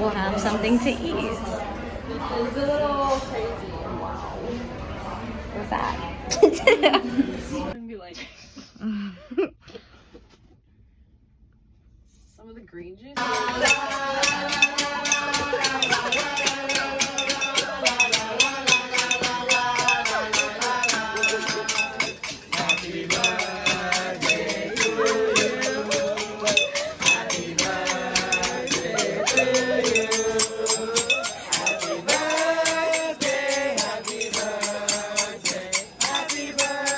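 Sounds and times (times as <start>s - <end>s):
fast even percussion: 13.2s - 36.9s
song with sung melody: 13.2s - 36.9s.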